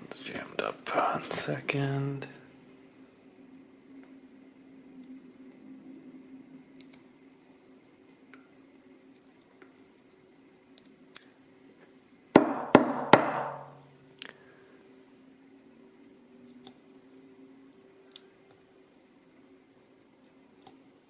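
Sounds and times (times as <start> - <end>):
sharp metallic knocks: 12.4 - 13.8.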